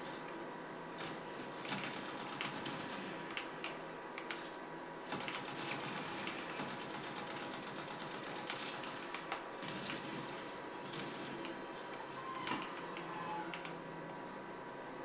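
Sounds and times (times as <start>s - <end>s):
mechanical keyboard typing: 1.0s - 10.0s.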